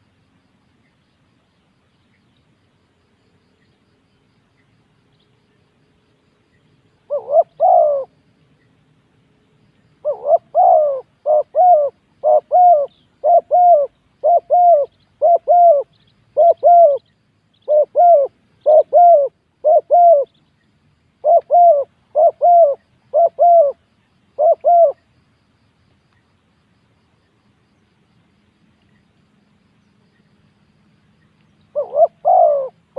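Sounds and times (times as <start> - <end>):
dove cooing: 7.1 - 8.1, 10.0 - 20.4, 21.2 - 23.8, 24.4 - 25.0, 31.7 - 32.9.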